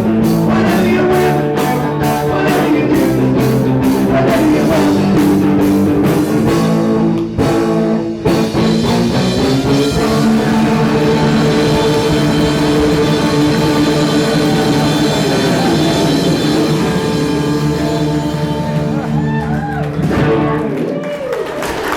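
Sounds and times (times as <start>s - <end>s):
live rock band playing: 0.0s - 20.9s
drum hits: 5.0s - 20.7s.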